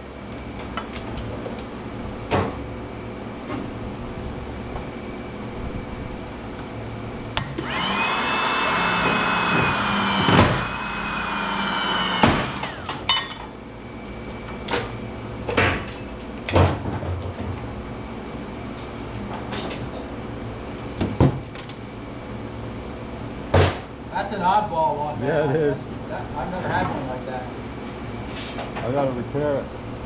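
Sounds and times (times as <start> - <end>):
machine whining: 7.3 - 13.4.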